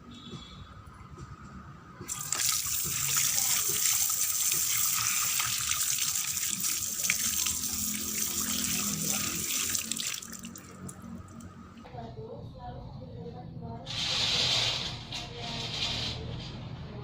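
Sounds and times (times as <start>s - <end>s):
tap water running into sink: 2.1s - 11.5s.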